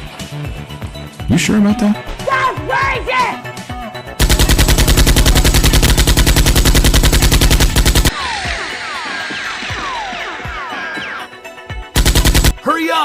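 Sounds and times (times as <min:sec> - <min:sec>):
machine-gun fire: 0:04.2 - 0:08.2, 0:12.0 - 0:12.7.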